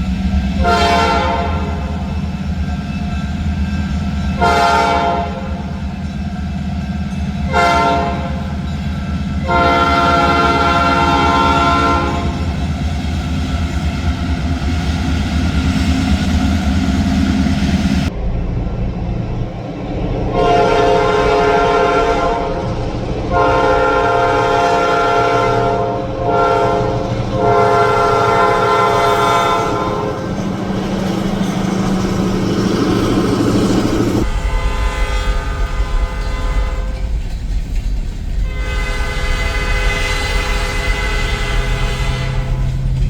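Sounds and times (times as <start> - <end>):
low locomotive rumble: 0.0 - 43.0
locomotive air horn blasts: 0.6 - 2.0, 4.4 - 5.6, 7.5 - 8.5, 9.4 - 12.5, 20.3 - 22.7, 23.3 - 30.5, 33.6 - 37.0, 38.4 - 43.0.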